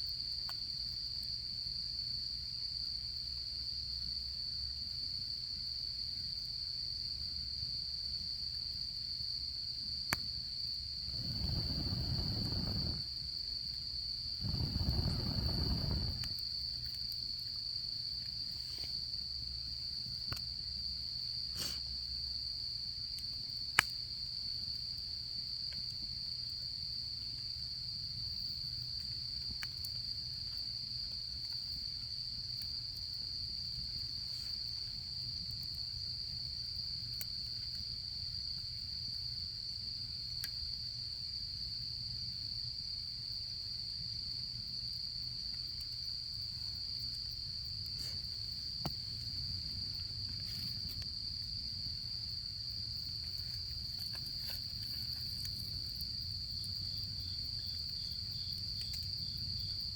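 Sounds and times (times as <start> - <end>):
insects trilling: 10.4 - 41.4, 42.0 - 59.9
campfire crackling: 11.0 - 13.2, 14.4 - 16.5, 47.2 - 59.6
low whooshes: 11.1 - 13.0, 14.4 - 16.3.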